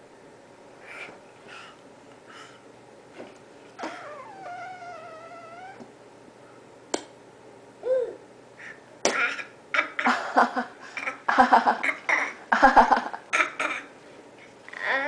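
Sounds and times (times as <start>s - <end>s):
baby fake coughing: 11.8s - 12.4s, 13.3s - 13.9s.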